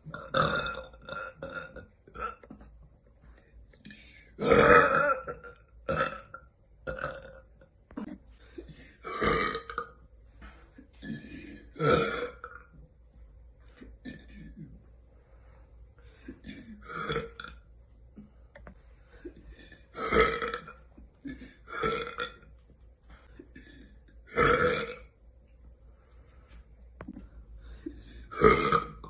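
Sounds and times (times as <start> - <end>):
women burping: 28.2 - 29.0.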